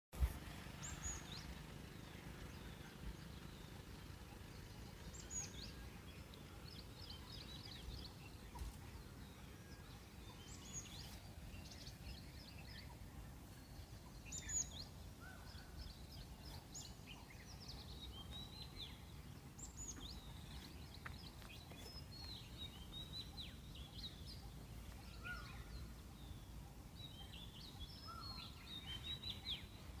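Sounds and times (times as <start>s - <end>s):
low steady rumble: 0.2s - 30.0s
small birds chirping: 0.2s - 30.0s.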